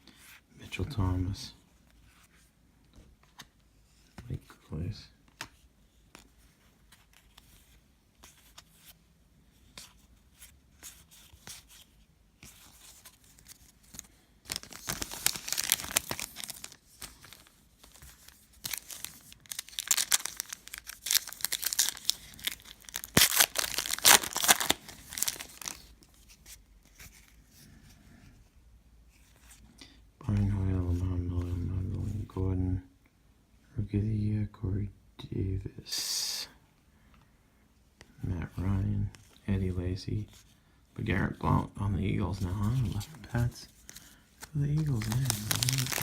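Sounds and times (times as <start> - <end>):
wrapper tearing and crinkling: 13.4 - 25.9, 44.8 - 46.0.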